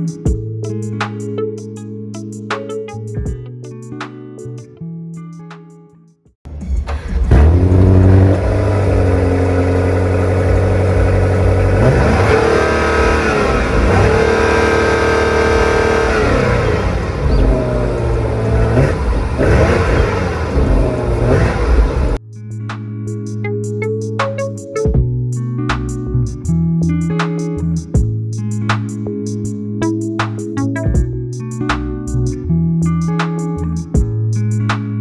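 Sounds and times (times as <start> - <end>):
car engine starting and revving: 6.5 - 22.2.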